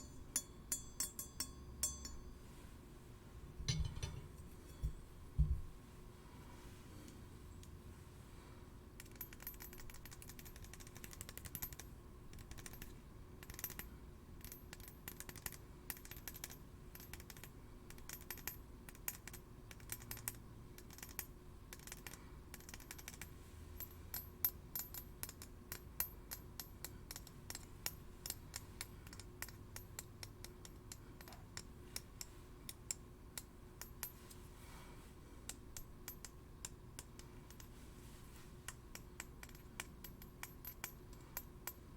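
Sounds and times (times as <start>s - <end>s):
steel blades clinking: 0.0s - 2.5s, 3.7s - 5.1s.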